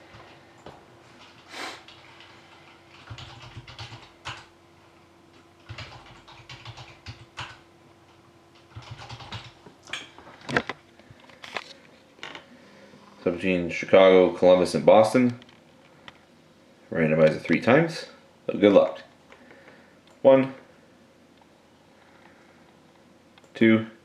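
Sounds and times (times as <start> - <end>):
typing on computer keyboard: 1.2 - 4.5, 5.6 - 7.6, 8.5 - 9.6.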